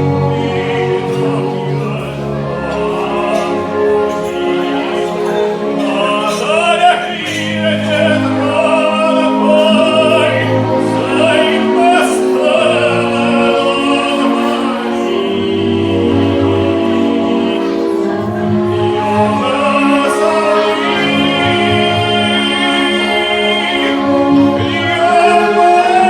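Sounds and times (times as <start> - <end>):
operatic singing: 0.0 - 26.0
sustained instrumental accompaniment: 0.0 - 26.0.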